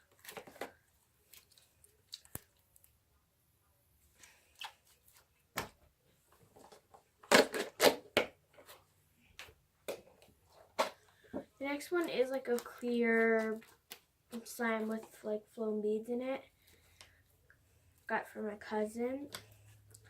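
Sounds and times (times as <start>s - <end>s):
slime pulled and squished: 4.5s - 5.2s.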